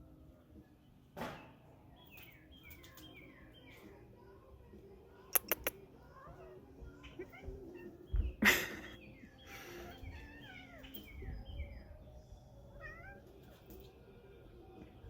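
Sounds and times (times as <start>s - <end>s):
cat meowing: 10.0s - 11.1s, 12.8s - 13.4s.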